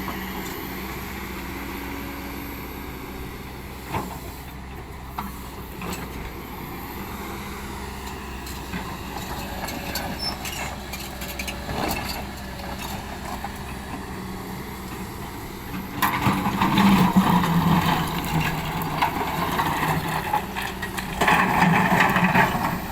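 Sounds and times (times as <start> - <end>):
excavator diesel engine running: 0.0 - 22.9.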